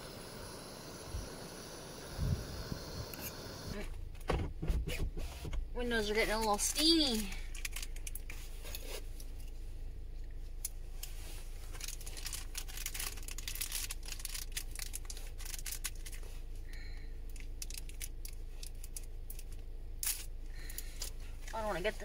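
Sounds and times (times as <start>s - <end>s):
steady low hum: 0.0s - 22.0s
packets crinkling and tearing: 7.1s - 9.0s, 11.6s - 16.4s, 17.3s - 21.2s.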